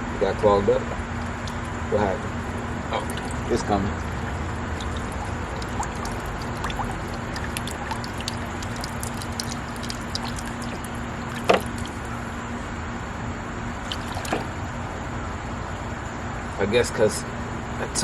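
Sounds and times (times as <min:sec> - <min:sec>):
fountain water splashing: 0:02.4 - 0:12.4, 0:13.8 - 0:14.6
small water drips: 0:02.4 - 0:12.5, 0:13.8 - 0:14.7
loud splash or knock: 0:09.8 - 0:12.0, 0:13.9 - 0:14.5.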